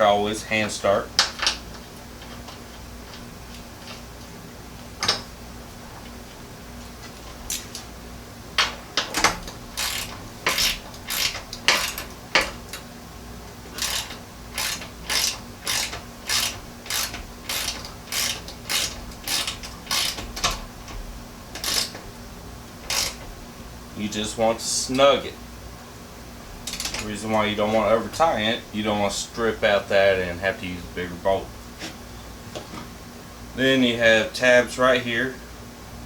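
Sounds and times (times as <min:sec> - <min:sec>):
hand ratchet clicking: 0:09.0 - 0:12.8, 0:13.7 - 0:22.0, 0:22.8 - 0:23.3, 0:26.6 - 0:27.4.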